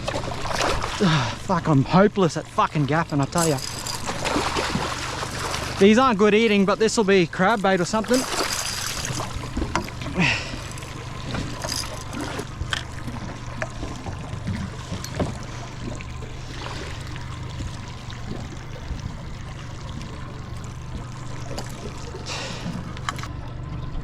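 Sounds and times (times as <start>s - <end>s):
boat motor idling: 0.0s - 24.0s
water lapping around hull: 0.0s - 24.0s.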